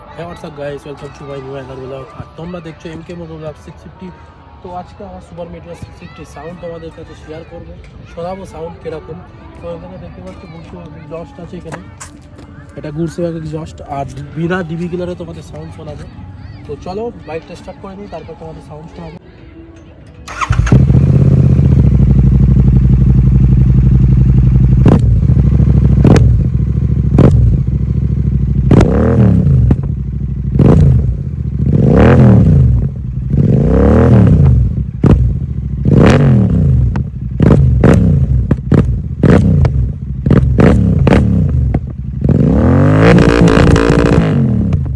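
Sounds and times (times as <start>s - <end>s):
motorcycle engine revving: 20.3s - 44.9s
exhaust crackles and pops: 24.4s - 31.2s, 34.1s - 44.9s.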